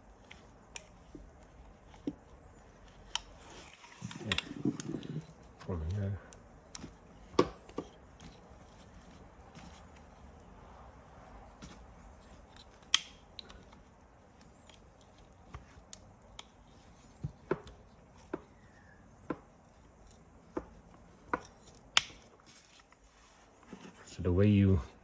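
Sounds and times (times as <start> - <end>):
tools clicking on plastic clips: 12.5 - 13.8.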